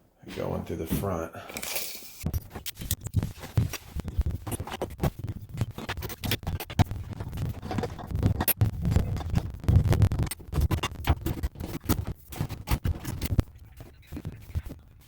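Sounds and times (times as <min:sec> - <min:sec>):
dull low thumps: 0:02.2 - 0:05.8, 0:06.4 - 0:13.7
scratching and light clicking: 0:02.2 - 0:15.0.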